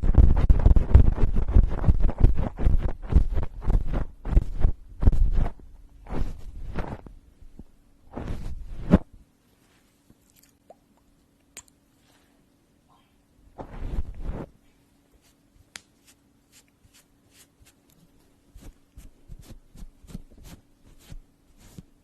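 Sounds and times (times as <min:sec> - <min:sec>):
crackly rustling bursts: 0:00.0 - 0:10.3
faint steady hum: 0:00.0 - 0:22.0.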